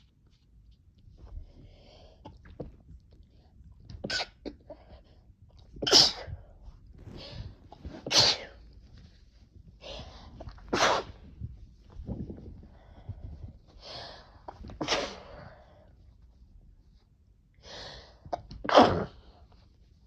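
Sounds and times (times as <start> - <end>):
person sneezing: 8.0 - 8.6, 10.7 - 11.2, 14.8 - 15.3, 18.6 - 19.3.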